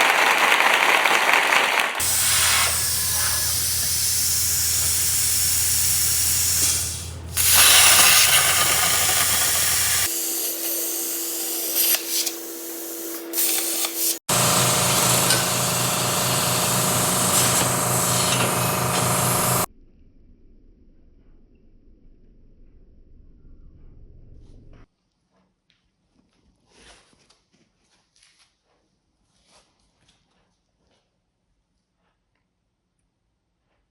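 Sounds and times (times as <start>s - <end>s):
hissing grinding noise: 2.0s - 19.7s
power tool motor hum: 2.0s - 19.7s.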